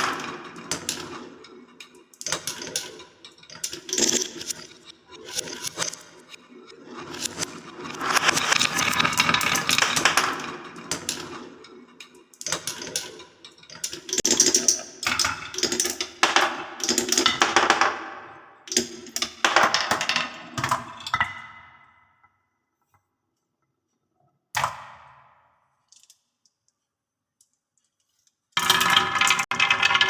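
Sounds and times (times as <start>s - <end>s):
balls clattering down a wooden run: 0.0s - 1.4s, 8.0s - 11.6s, 18.7s - 20.9s, 28.6s - 30.0s.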